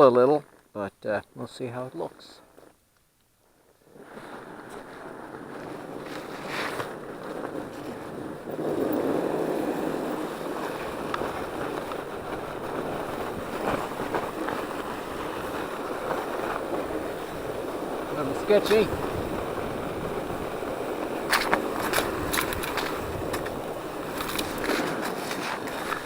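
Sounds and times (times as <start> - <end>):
fat tyres rolling over snow: 3.4 - 26.0
wind on microphone: 3.8 - 26.0
bike knocking over bumps: 18.6 - 26.0.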